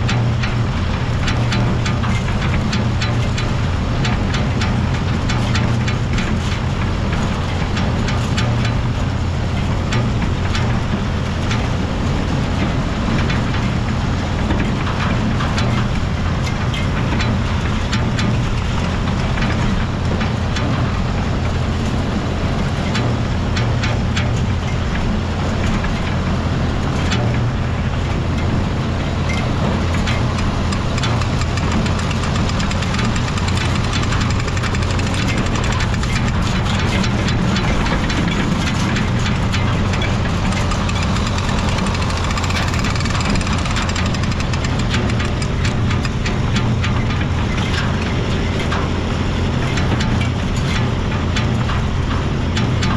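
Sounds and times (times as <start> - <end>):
tractor engine running: 0.0 - 52.9
light clicking and rattling: 29.2 - 48.9.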